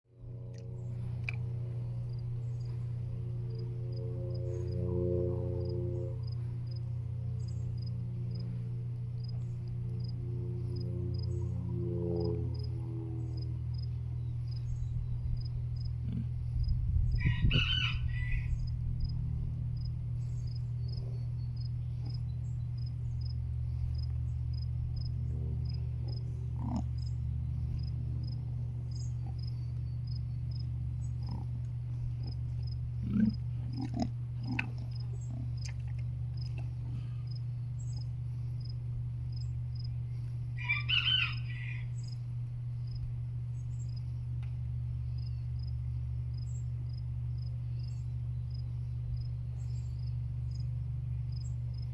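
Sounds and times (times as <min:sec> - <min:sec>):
low rumble: 0:00.1 - 0:40.6
insect chirping: 0:05.6 - 0:08.5, 0:12.6 - 0:44.2, 0:44.8 - 0:51.9
rooster crowing: 0:17.0 - 0:18.8, 0:40.6 - 0:42.2
short animal calls: 0:33.0 - 0:35.8.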